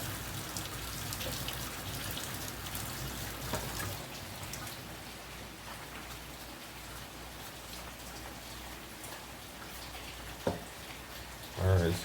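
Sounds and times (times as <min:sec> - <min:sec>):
water pattering: 0:00.0 - 0:12.0
water drops: 0:00.5 - 0:04.8, 0:09.8 - 0:12.0
light knocks: 0:10.4 - 0:10.7.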